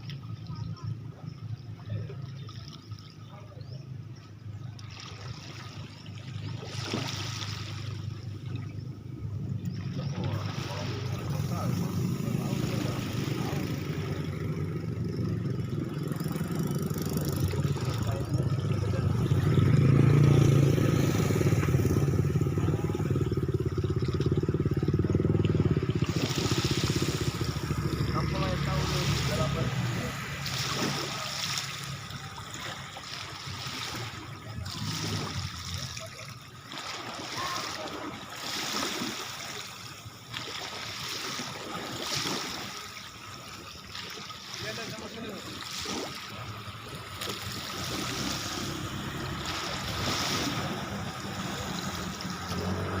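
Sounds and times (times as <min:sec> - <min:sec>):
speedboat engines running: 0:00.0 - 0:53.0
water splashing against boat hull: 0:04.6 - 0:08.8, 0:09.6 - 0:14.5, 0:21.5 - 0:53.0.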